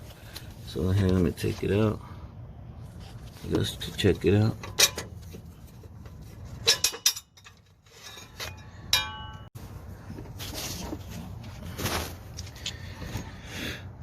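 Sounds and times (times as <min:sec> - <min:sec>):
metal clinks and knocks: 0:04.6 - 0:09.5
metallic ring: 0:06.5 - 0:09.6.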